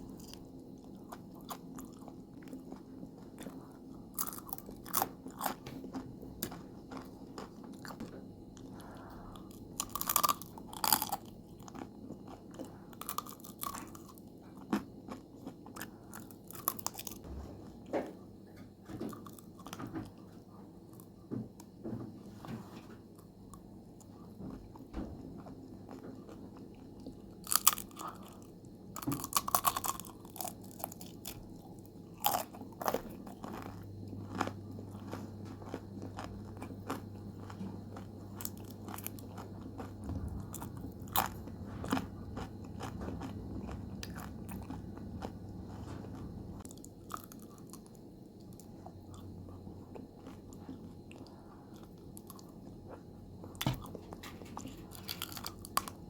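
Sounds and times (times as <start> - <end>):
crunching potato chips: 1.0 - 8.1, 8.7 - 17.2, 27.0 - 28.4, 29.0 - 47.9, 53.5 - 56.0.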